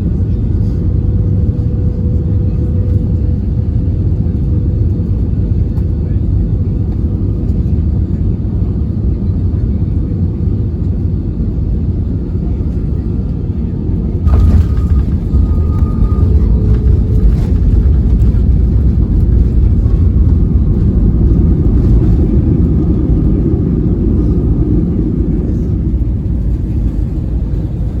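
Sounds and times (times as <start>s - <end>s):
airliner cabin rumble: 0.0s - 28.0s.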